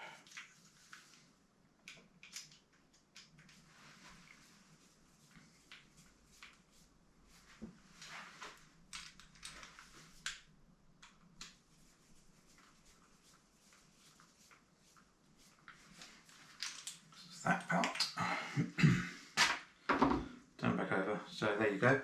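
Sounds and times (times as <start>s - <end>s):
small parts being handled: 1.8s - 3.6s, 8.8s - 11.6s, 15.7s - 18.0s.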